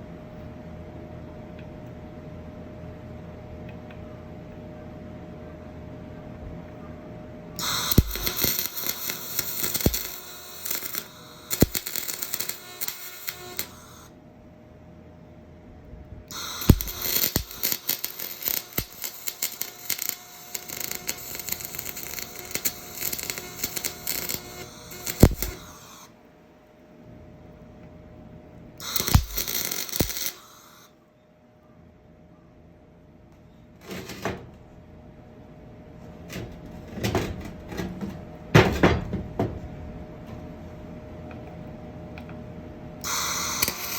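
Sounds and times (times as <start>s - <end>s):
electric arc welding crackling: 7.6s - 14.1s, 16.3s - 26.1s, 28.8s - 30.9s, 43.0s - 43.9s.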